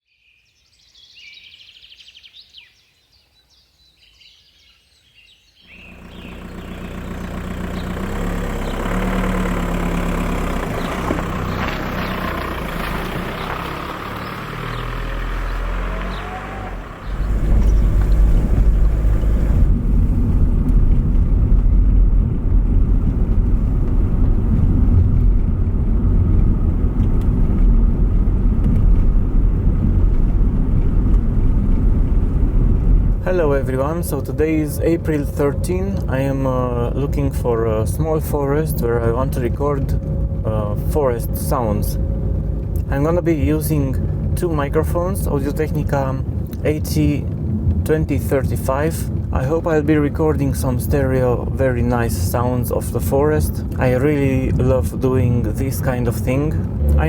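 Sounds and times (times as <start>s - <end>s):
car engine and road noise: 5.6s - 57.0s.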